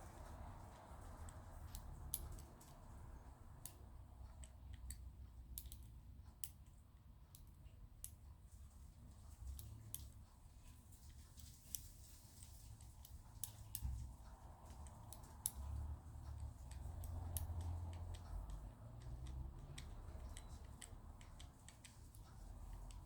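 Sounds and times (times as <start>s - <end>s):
padlock number wheels clicking: 12.9s - 23.0s.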